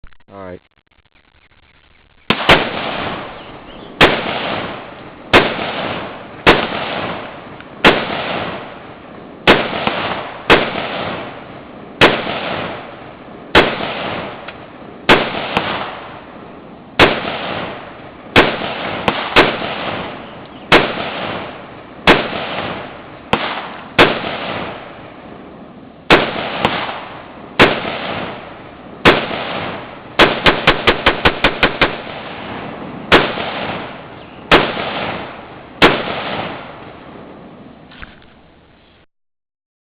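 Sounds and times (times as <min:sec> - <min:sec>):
rapid rifle shots: 0:02.2 - 0:08.7, 0:09.5 - 0:11.4, 0:12.0 - 0:12.9, 0:13.6 - 0:14.4, 0:15.1 - 0:16.1, 0:17.0 - 0:24.9, 0:26.1 - 0:36.8
rifle shots with echo: 0:02.3 - 0:37.5.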